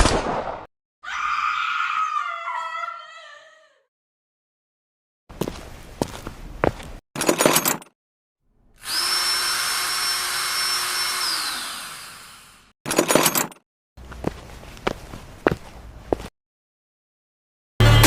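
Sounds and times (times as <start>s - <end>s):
small electric motor whirring: 8.8s - 12.7s.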